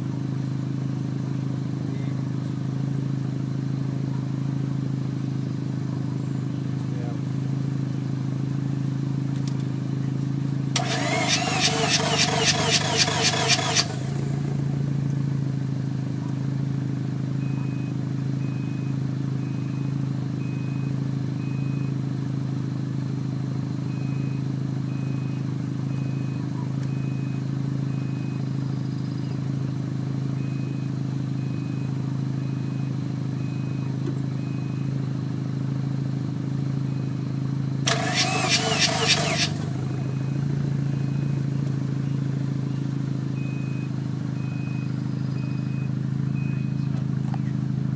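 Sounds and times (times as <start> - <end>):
engine starter cranking: 10.8 - 14.3, 37.9 - 39.8.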